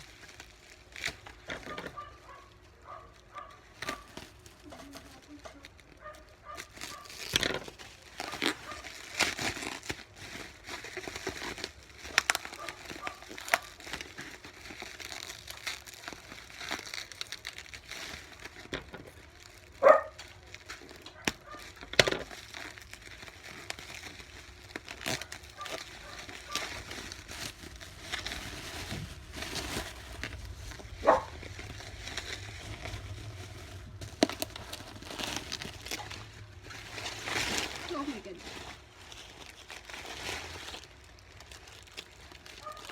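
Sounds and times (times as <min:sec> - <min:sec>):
packaging crinkling and rustling: 0:00.0 - 0:42.9.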